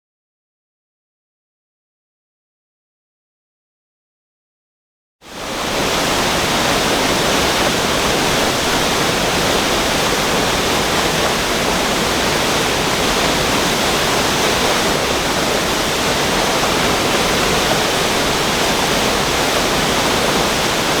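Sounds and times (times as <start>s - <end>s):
water rushing through spillway: 5.3s - 21.0s.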